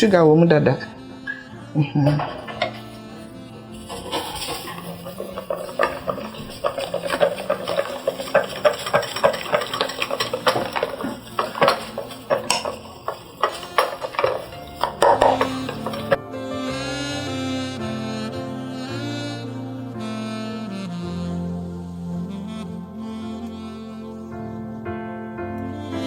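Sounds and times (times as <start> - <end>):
utensil stirring in a bowl: 2.0 - 16.2.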